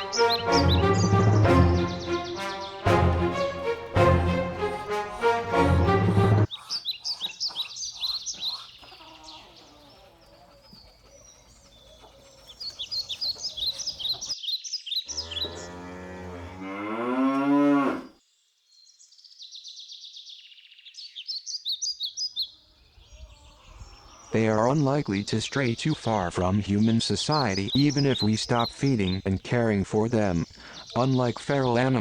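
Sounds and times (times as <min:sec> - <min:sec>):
small birds chirping: 0:00.0 - 0:02.9, 0:06.5 - 0:16.5, 0:18.3 - 0:32.0
cow mooing: 0:15.1 - 0:18.1.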